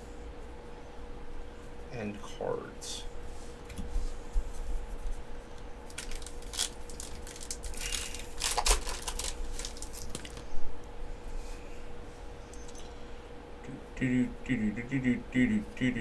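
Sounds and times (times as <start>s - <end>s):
foil wrappers crinkling: 5.8s - 10.5s.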